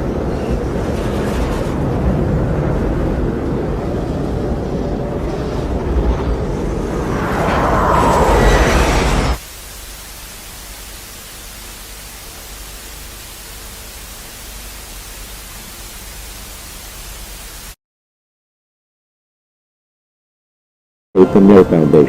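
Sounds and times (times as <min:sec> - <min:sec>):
loud rushing noise: 0:00.0 - 0:09.8
tv static hiss: 0:09.4 - 0:17.8.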